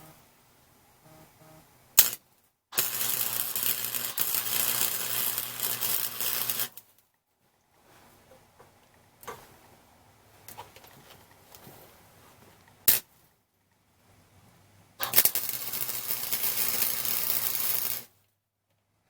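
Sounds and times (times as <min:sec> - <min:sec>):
welder arc crackling: 0:01.0 - 0:02.2, 0:02.8 - 0:06.9, 0:15.0 - 0:18.1.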